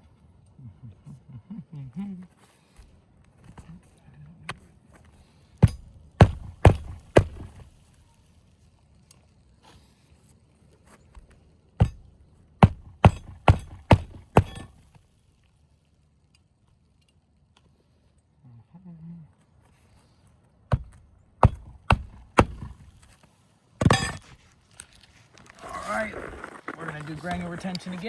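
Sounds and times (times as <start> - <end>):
hammer driving nails into shingles: 5.6 - 7.8, 11.8 - 15.0, 20.7 - 23.2, 23.8 - 24.5.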